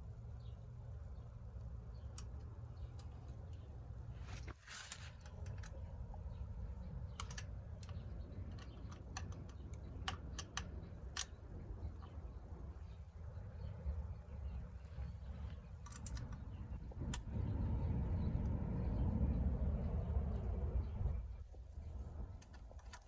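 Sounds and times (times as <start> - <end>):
wrench clicking on metal: 7.1 - 11.4
low rumble: 11.6 - 22.6.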